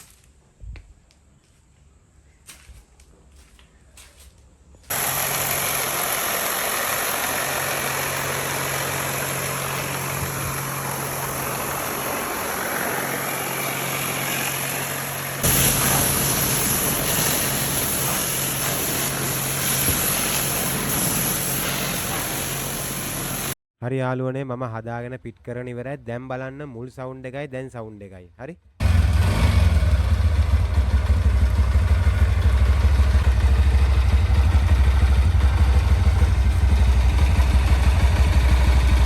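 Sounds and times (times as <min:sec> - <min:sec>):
scooter engine idling: 0:04.9 - 0:23.6, 0:28.8 - 0:39.0.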